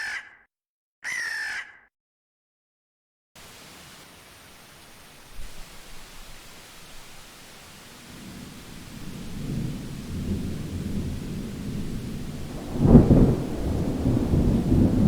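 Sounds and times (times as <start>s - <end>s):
steady rain hiss: 3.4s - 15.0s
low rolling thunder: 8.0s - 15.0s.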